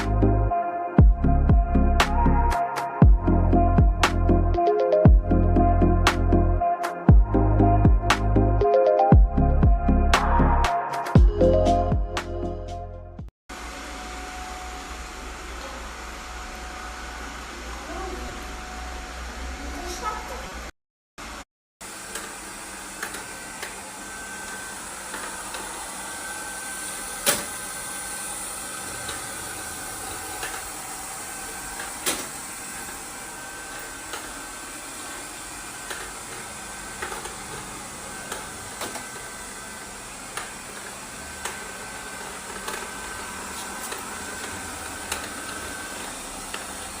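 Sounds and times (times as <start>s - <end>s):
robot vacuum cleaner running: 13.5s - 47.0s.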